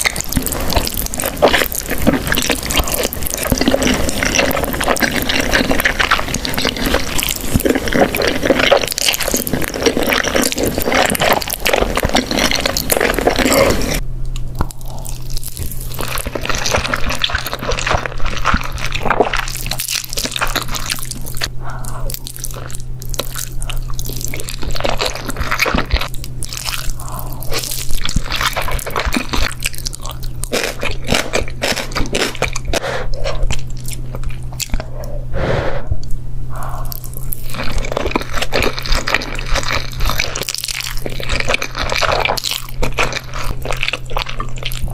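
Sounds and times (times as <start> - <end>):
noodle eating noise: 0.0 - 14.0
wet chewing and biting: 0.0 - 35.1, 36.6 - 44.9
steady low hum: 0.0 - 44.9.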